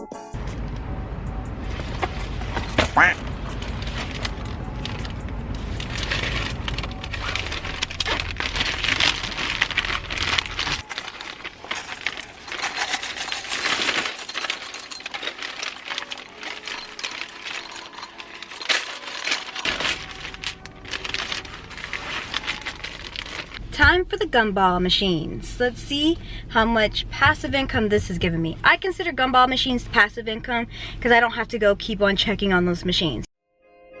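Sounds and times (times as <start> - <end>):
coins clinking and rattling: 1.7 - 23.6.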